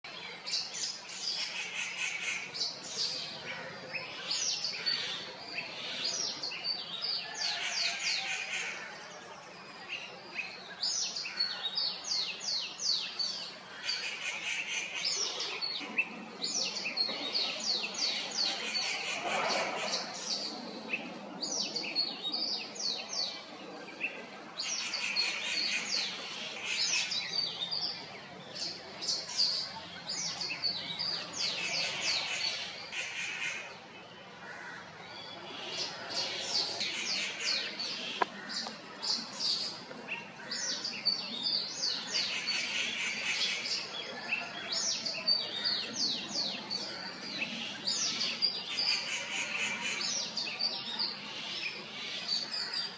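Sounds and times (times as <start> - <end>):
birds chirping: 10.8 - 52.9.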